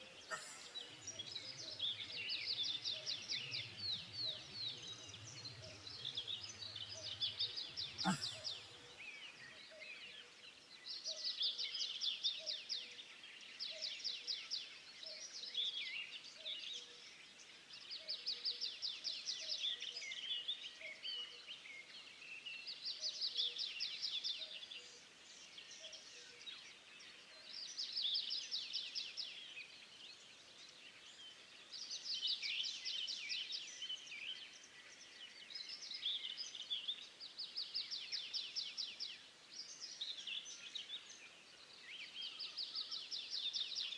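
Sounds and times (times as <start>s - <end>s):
songbird singing trills: 0.0s - 8.8s
faint outdoor background noise: 0.0s - 43.9s.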